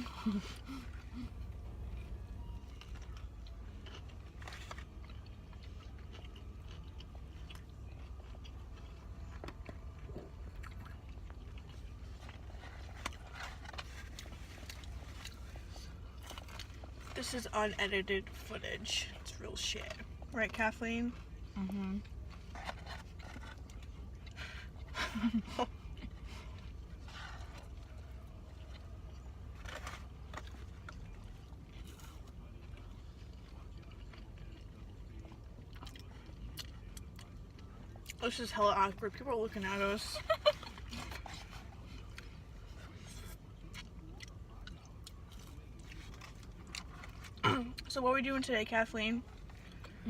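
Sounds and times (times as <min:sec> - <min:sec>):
person chewing: 0:00.0 - 0:17.2, 0:21.1 - 0:38.2, 0:40.3 - 0:47.8.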